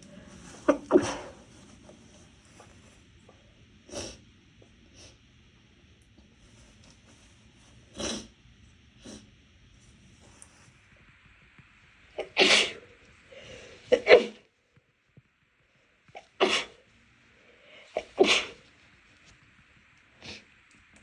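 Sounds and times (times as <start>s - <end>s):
person sneezing: 0.6s - 1.4s, 12.2s - 12.9s, 13.8s - 14.4s, 16.2s - 16.8s, 17.8s - 18.6s.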